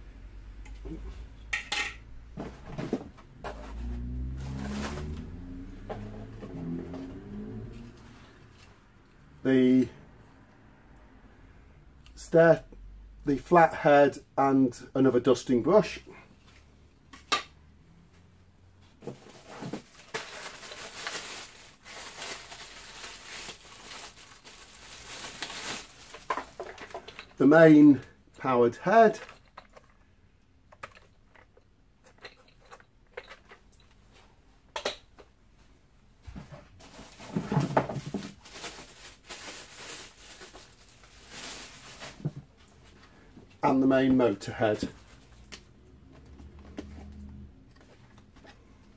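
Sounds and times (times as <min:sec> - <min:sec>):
plastic packaging crinkling: 0:19.1 - 0:27.2, 0:36.8 - 0:42.5.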